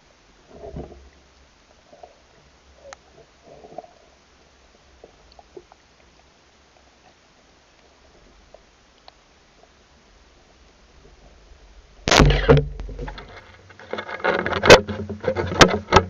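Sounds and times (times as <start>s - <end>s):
small clicks: 8.9s - 9.2s
muffled underwater thumps: 12.1s - 13.4s.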